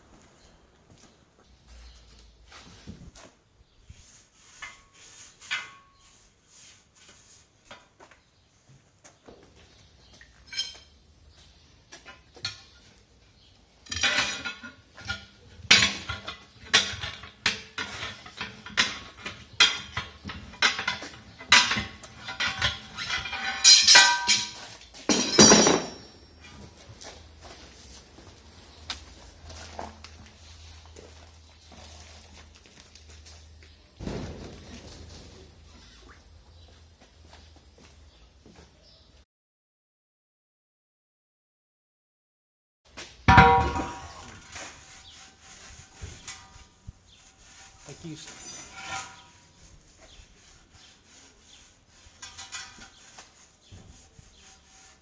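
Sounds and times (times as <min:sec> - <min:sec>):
metal scraping on rim: 0:04.4 - 0:06.8, 0:13.8 - 0:28.0, 0:43.3 - 0:55.0
pry bars clanking on metal rim: 0:13.9 - 0:26.5.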